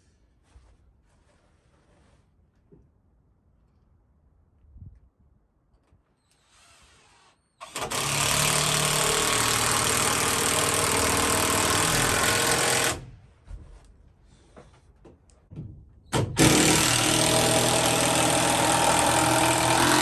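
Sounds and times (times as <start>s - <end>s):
power tool running under load: 7.6s - 13.1s, 16.4s - 20.0s.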